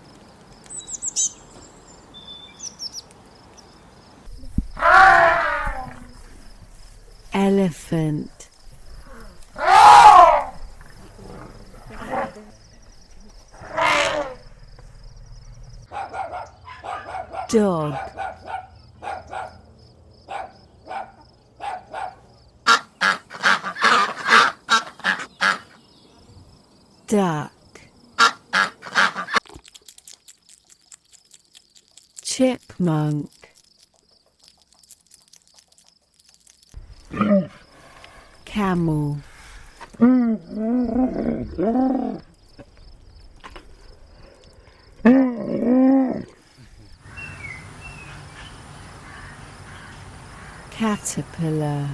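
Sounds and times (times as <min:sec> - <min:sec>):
camel bellowing: 0:04.7 - 0:07.1
ducks quacking: 0:22.7 - 0:25.8, 0:28.2 - 0:29.4.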